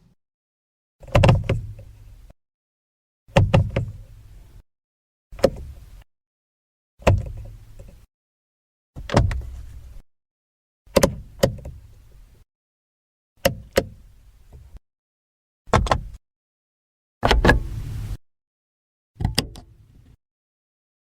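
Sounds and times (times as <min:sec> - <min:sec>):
car door latch clicks and thunk: 0:01.1 - 0:01.8, 0:03.3 - 0:04.0, 0:07.0 - 0:08.0, 0:09.0 - 0:09.7, 0:10.9 - 0:11.8, 0:13.4 - 0:14.6, 0:15.7 - 0:16.2, 0:17.2 - 0:17.8, 0:19.2 - 0:19.7.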